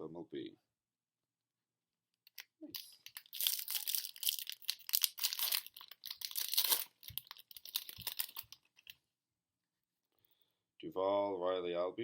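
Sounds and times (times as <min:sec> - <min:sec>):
foil wrapper tearing and crinkling: 0:02.8 - 0:09.0.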